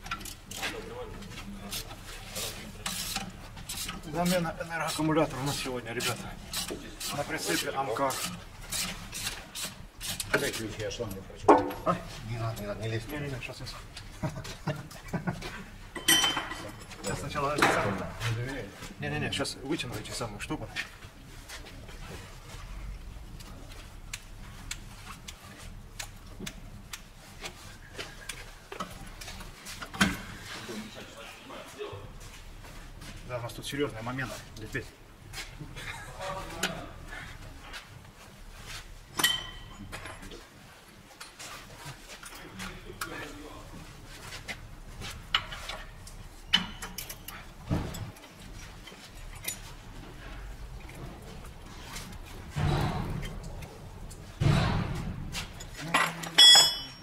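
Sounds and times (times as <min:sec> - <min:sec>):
metal tools clinking on metal: 0:15.9 - 0:17.9, 0:39.1 - 0:40.3, 0:46.5 - 0:49.8, 0:55.5 - 0:57.0.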